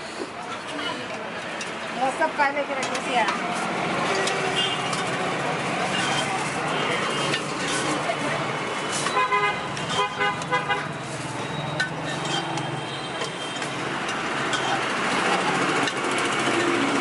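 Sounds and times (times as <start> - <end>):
street traffic noise: 0.0 - 17.0.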